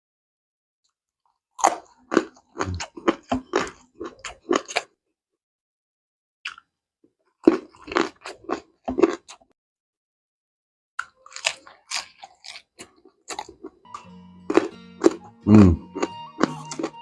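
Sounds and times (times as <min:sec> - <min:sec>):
crunching and chewing: 0:01.2 - 0:05.0, 0:07.3 - 0:09.6, 0:11.0 - 0:13.9, 0:14.5 - 0:17.0.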